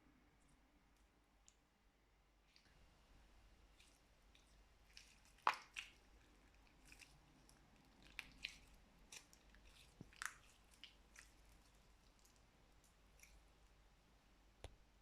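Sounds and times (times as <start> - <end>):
slime squishing with sticky pops: 3.7 - 13.6.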